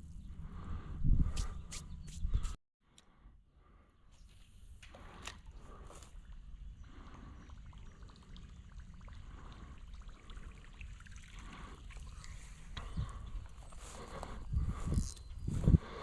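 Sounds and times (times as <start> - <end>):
creek water trickling: 4.8 - 15.5.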